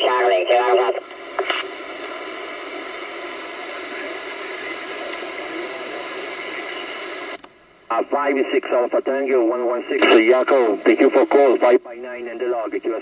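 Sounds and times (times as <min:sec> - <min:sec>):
radio static hiss: 0:00.0 - 0:13.0.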